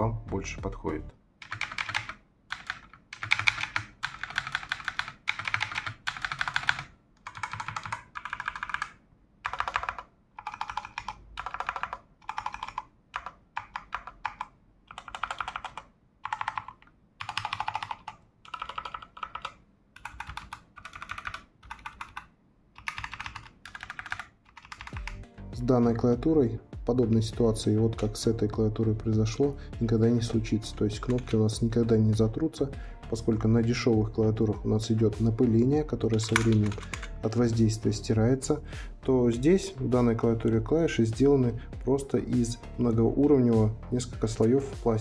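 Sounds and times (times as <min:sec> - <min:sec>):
mechanical keyboard typing: 0:01.4 - 0:25.2, 0:30.2 - 0:31.6, 0:35.0 - 0:37.6.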